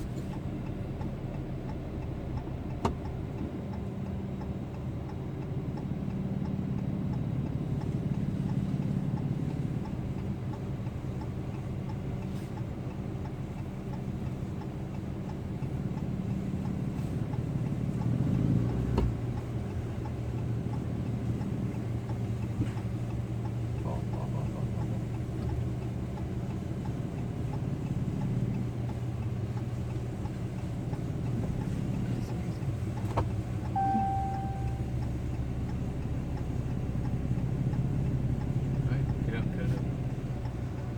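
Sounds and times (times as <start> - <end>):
short high beep: 33.8 - 35.0.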